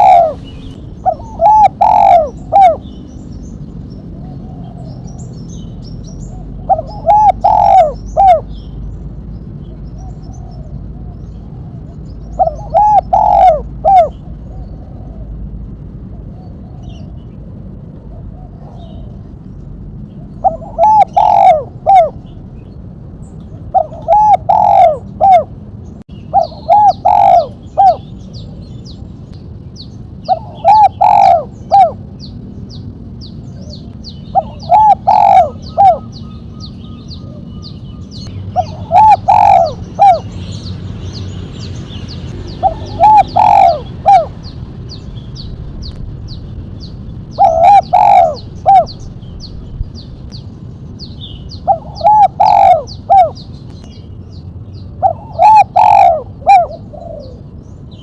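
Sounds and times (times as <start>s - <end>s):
dove cooing: 0.0s - 3.0s, 6.2s - 8.6s, 10.0s - 15.4s, 20.3s - 22.3s, 23.7s - 25.5s, 26.3s - 28.6s, 30.2s - 32.2s, 33.6s - 40.4s, 42.4s - 44.5s, 47.3s - 49.0s, 51.6s - 53.5s, 55.0s - 57.5s
low steady hum: 0.0s - 58.0s
small birds chirping: 0.0s - 58.0s.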